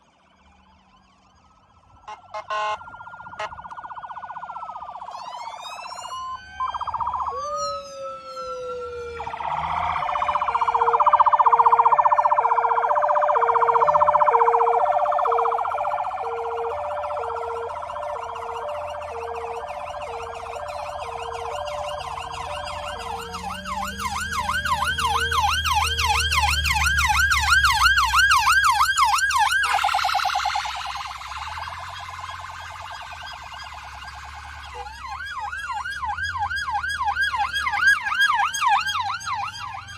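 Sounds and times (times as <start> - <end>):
electronic siren wail: 0.0 - 39.9
fast siren yelp: 0.0 - 39.9
passing engine: 0.4 - 39.9
two-tone horn: 2.1 - 3.6.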